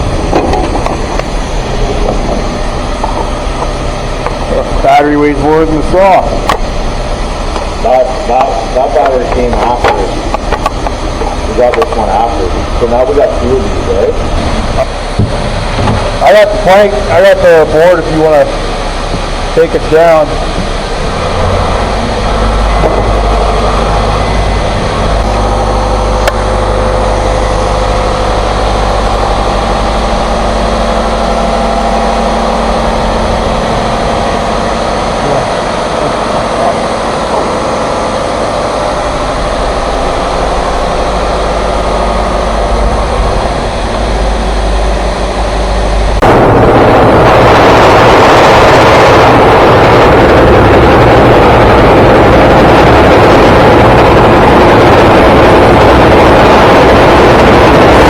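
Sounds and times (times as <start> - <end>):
engine running: 0.0 - 58.0
loud rushing noise: 0.0 - 58.0.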